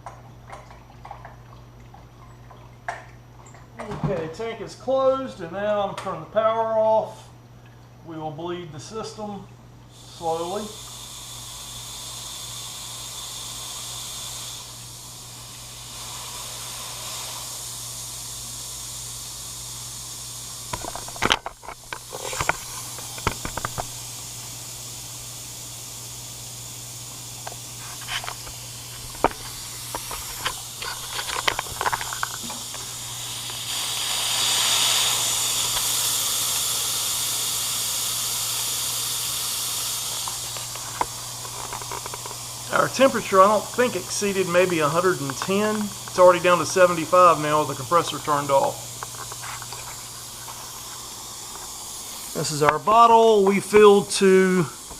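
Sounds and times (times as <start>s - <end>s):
high-pressure air hissing: 9.9s - 54.9s.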